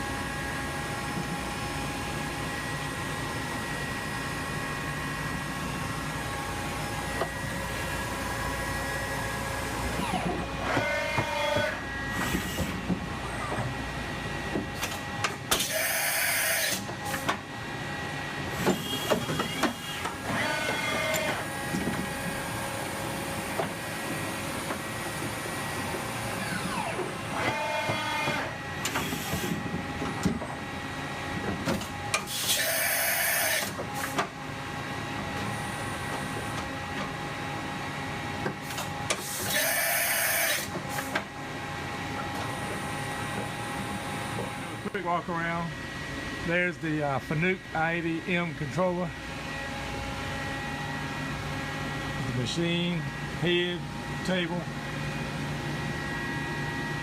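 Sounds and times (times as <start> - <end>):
machine hum with constant tones: 0.0 - 57.0
whining servo moves: 15.6 - 16.9, 18.6 - 21.5, 26.3 - 29.6, 32.3 - 33.8, 39.2 - 40.7.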